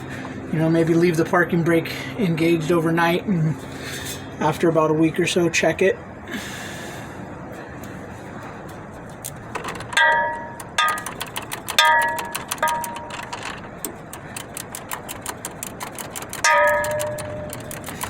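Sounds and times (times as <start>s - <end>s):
ringing metal clinks: 11.8s - 13.4s, 16.4s - 18.0s.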